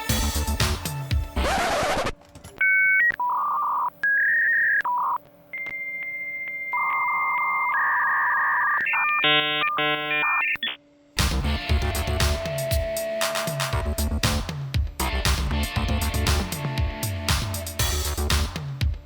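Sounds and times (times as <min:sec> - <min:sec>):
harsh modem buzzing: 0:01.1 - 0:16.9
hissing modem data tones: 0:01.4 - 0:10.8
high modem answer tone: 0:02.6 - 0:10.8
modem dialing tones: 0:02.6 - 0:10.8.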